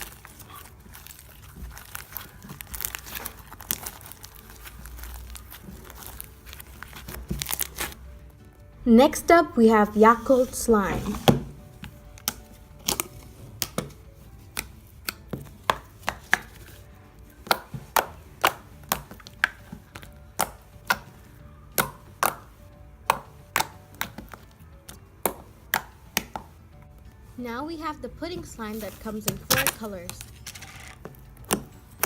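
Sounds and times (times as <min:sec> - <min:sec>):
slime clicking and popping: 0:12.2 - 0:16.7, 0:17.4 - 0:26.5.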